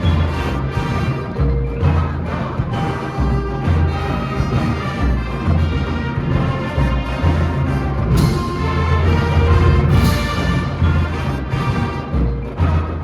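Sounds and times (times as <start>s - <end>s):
marching band playing: 0.0s - 13.0s
cymbal crash: 8.1s - 11.7s.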